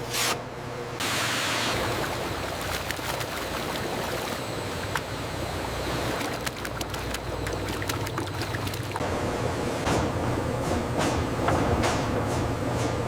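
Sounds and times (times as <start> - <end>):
oil sizzling in deep fryer: 1.0 - 2.1.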